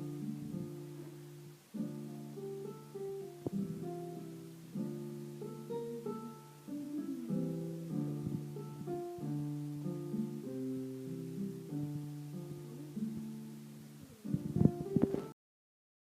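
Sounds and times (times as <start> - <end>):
plucked-string chords with melody: 0.0 - 15.3.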